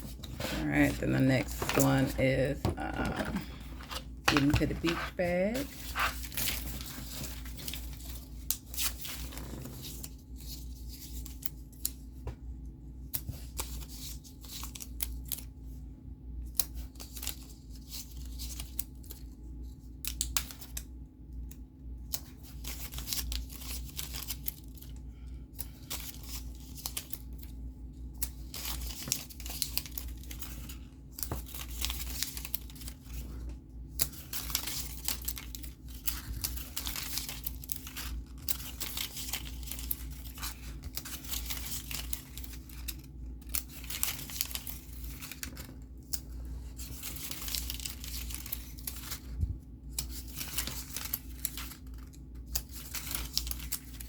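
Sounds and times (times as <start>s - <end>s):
paper and plastic rustling: 0.0s - 11.5s, 28.3s - 54.0s.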